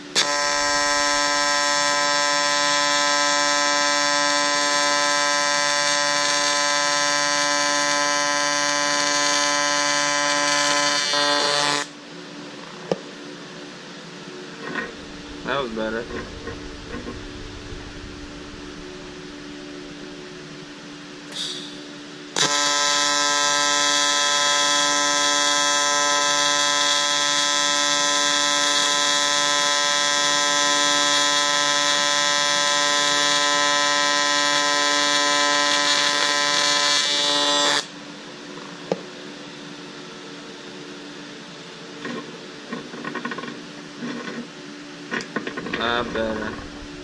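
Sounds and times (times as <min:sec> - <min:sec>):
welding arc buzzing: 0:00.0 - 0:12.0, 0:14.5 - 0:38.0, 0:45.2 - 0:47.0
short hiss: 0:21.3 - 0:21.9.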